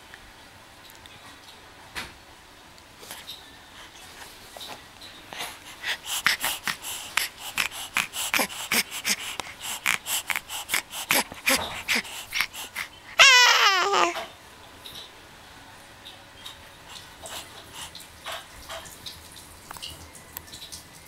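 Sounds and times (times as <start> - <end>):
baby breathing quickly: 5.3 - 14.2, 16.9 - 18.0
baby squeaky cry: 13.2 - 14.2.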